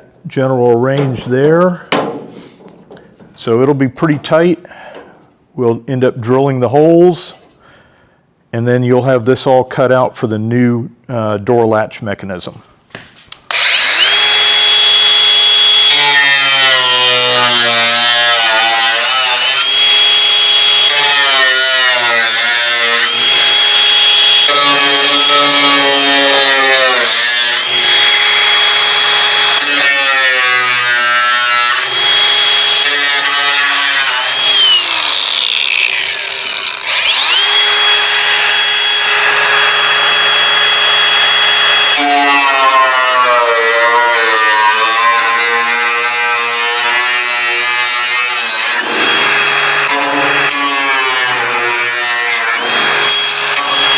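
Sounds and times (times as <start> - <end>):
electric cutoff tool cutting metal: 13.5 - 53.9.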